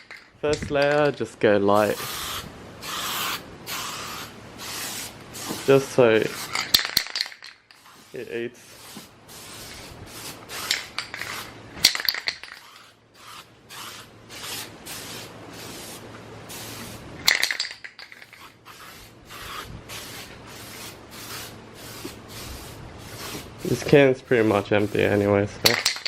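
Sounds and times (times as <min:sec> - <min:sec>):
aerosol spray can hissing: 0:01.9 - 0:05.7, 0:12.6 - 0:17.6, 0:18.2 - 0:23.9.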